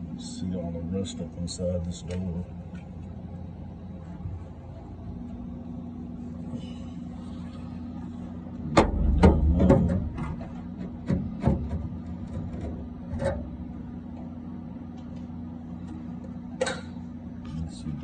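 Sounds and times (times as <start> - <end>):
steady low hum: 0.0 - 18.0
sheet metal knocking and scraping: 8.7 - 13.6.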